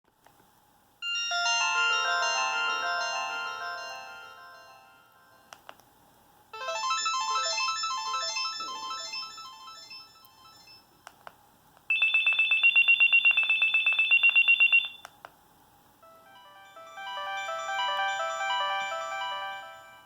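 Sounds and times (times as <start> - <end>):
melodic phone ringtone: 1.0 - 5.5, 6.6 - 10.9, 11.9 - 15.0, 16.0 - 20.0.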